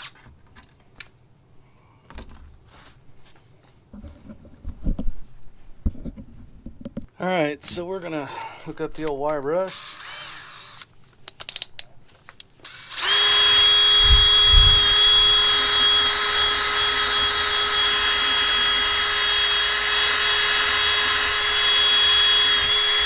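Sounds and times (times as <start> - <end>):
electric drill with wire brush: 9.7 - 10.9, 12.6 - 23.0.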